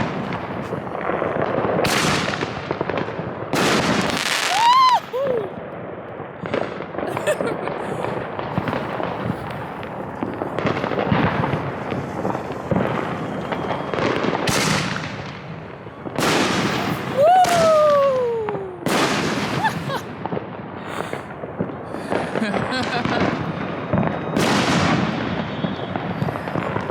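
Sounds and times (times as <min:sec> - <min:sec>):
firework bangs: 0:00.0 - 0:26.9
fireworks crackling and popping: 0:00.0 - 0:26.9
whistling firework shrieking: 0:04.1 - 0:05.6, 0:06.6 - 0:20.1, 0:22.6 - 0:26.9.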